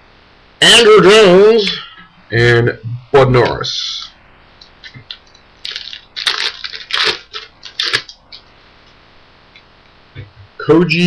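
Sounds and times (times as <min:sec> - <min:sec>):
wrapper crinkling and tearing: 0:05.1 - 0:08.2.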